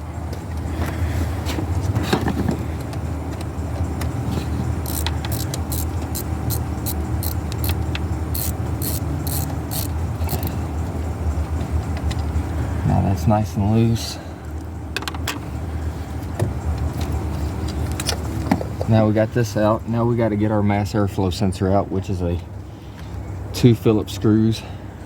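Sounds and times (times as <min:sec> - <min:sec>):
steady low hum: 0:00.0 - 0:23.6
socket ratchet clicking: 0:04.8 - 0:10.5.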